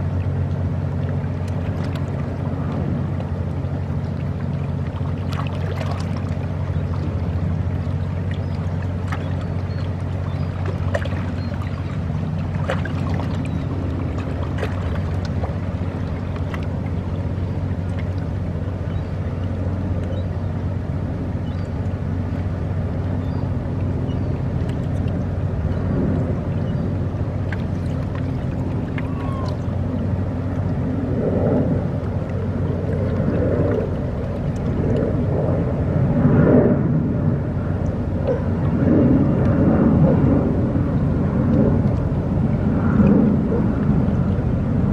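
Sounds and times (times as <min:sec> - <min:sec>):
water washing: 0:00.0 - 0:19.8, 0:23.7 - 0:36.0
boat engine droning: 0:00.0 - 0:44.9
wind: 0:00.0 - 0:44.9.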